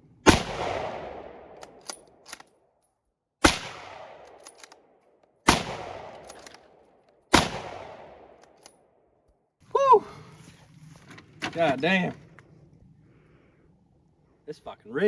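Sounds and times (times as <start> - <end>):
rifle shots echoing: 0.2 - 2.2, 3.4 - 8.5
rifle bolt clicks: 1.5 - 2.6, 4.1 - 5.4, 6.0 - 7.2, 8.3 - 8.8.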